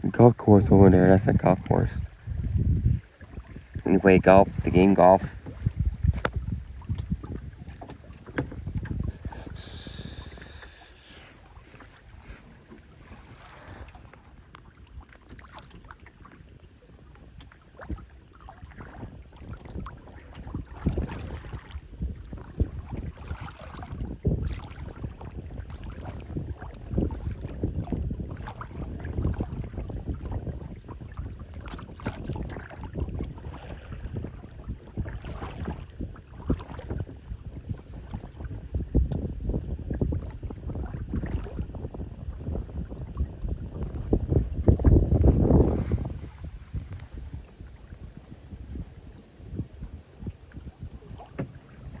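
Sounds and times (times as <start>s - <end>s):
rushing water: 0.0s - 37.0s
wind buffeting microphone: 0.0s - 52.0s.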